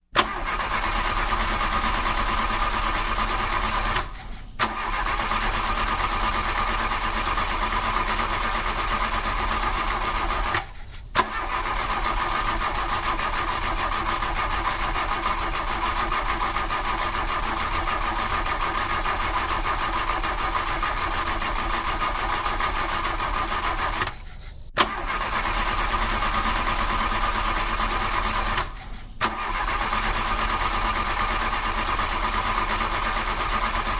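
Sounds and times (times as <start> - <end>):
car starter motor cranking: 0.0 - 24.2, 24.8 - 33.9
starter click: 0.2 - 24.2.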